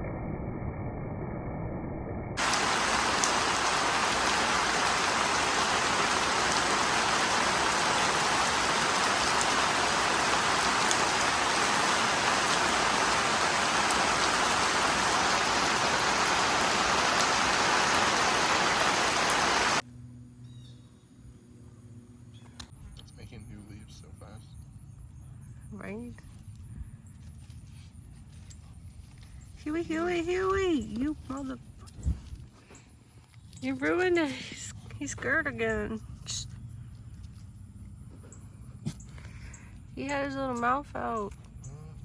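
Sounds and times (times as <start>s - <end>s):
heavy rain hiss: 2.4s - 19.8s.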